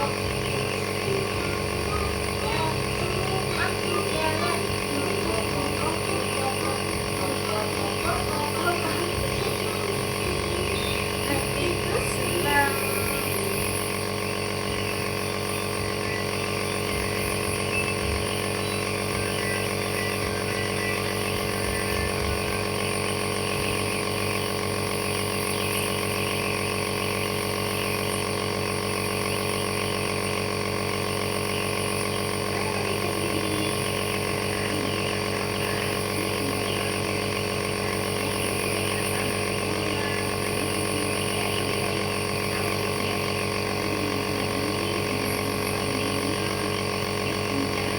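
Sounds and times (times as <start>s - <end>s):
nebulizer motor hum: 0.0s - 47.9s.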